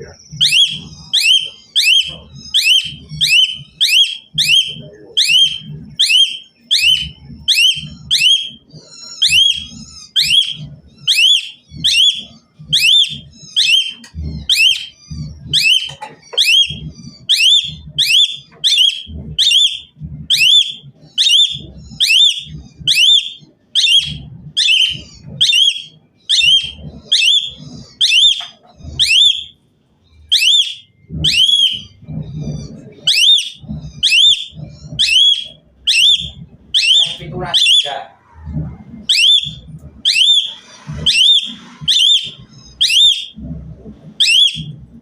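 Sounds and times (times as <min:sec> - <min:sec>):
starling whistled calls: 0:00.0 - 0:38.4, 0:39.0 - 0:43.4, 0:44.1 - 0:44.8.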